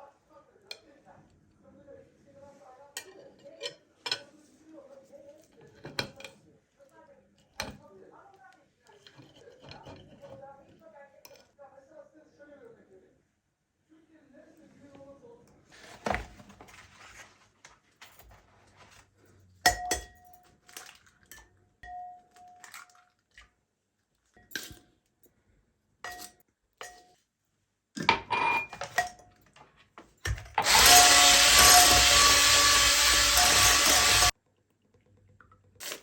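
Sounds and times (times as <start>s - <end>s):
kitchenware clinking: 3.0s - 4.3s, 5.4s - 6.4s, 8.9s - 11.5s, 19.6s - 23.2s, 24.3s - 25.0s, 26.0s - 27.2s, 28.0s - 34.3s
small electric motor running: 30.6s - 34.3s.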